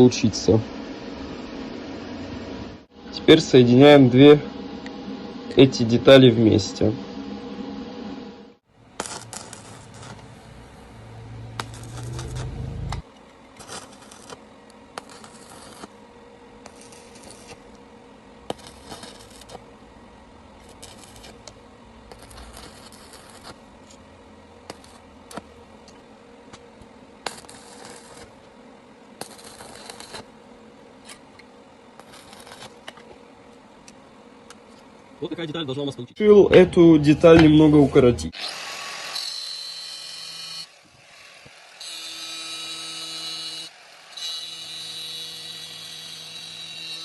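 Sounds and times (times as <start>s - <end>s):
low hum: 0.6s - 35.2s
welding crackling hiss: 8.8s - 33.2s.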